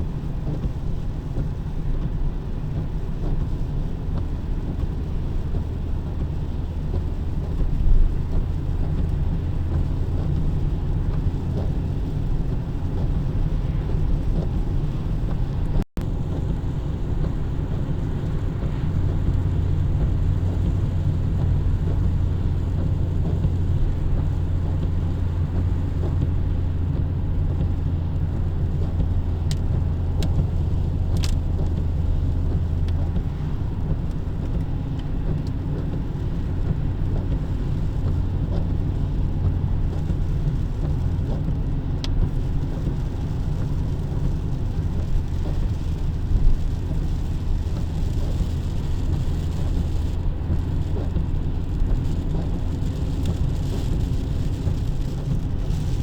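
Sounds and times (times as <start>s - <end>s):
car engine and tyre rumble: 0.0s - 56.0s.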